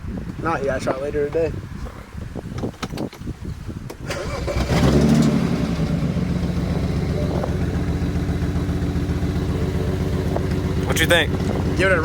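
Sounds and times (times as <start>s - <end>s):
car engine starting and idling: 3.9s - 12.0s.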